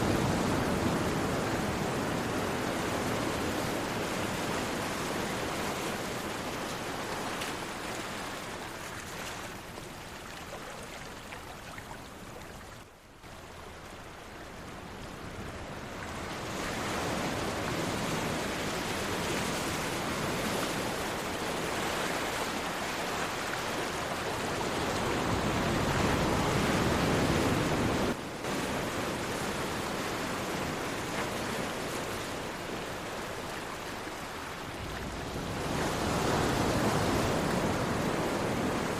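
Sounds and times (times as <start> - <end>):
sea waves washing: 0.0 - 38.9.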